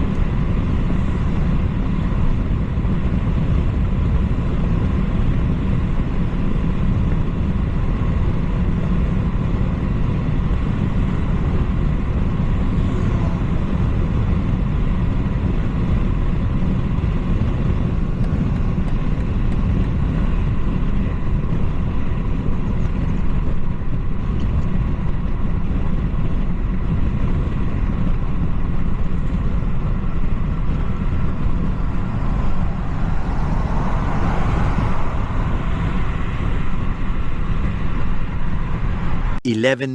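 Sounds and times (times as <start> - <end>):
car engine: 0.0 - 39.5
deep road rumble: 0.0 - 39.9
higher sound: 39.5 - 39.9.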